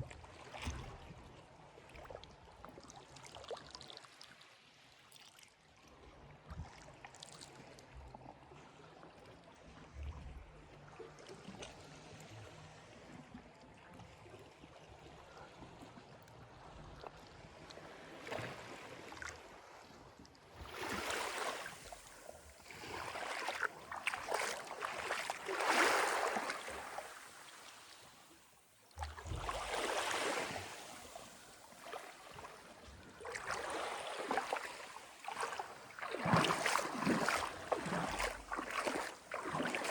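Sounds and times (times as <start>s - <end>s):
splashing surges: 20.6s - 27.6s, 33.2s - 39.9s
sea water lapping: 20.6s - 39.9s.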